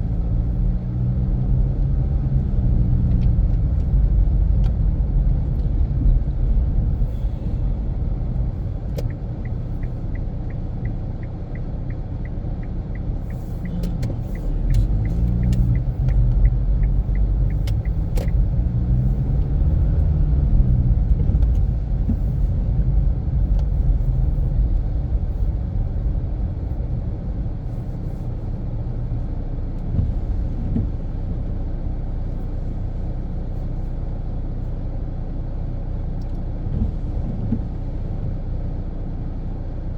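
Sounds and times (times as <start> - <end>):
car engine and tyres rumbling: 0.0 - 39.9
turn signal ticking: 8.3 - 27.4.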